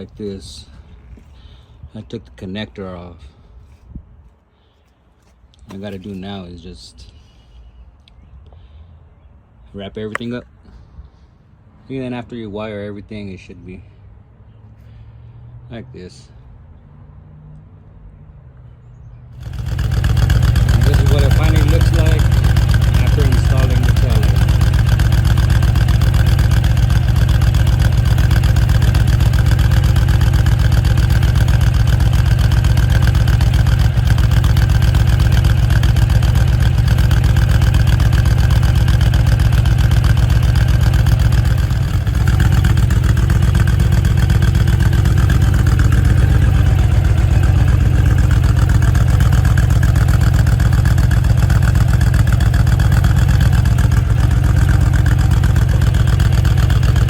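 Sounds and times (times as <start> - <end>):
motorcycle engine idling: 19.4 - 57.0.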